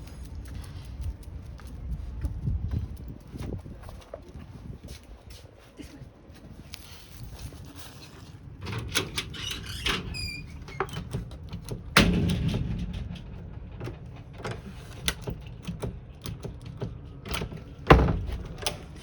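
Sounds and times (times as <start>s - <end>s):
heavy door thudding shut: 8.6s - 15.9s, 17.4s - 19.0s
clicks and knocks: 8.6s - 19.0s.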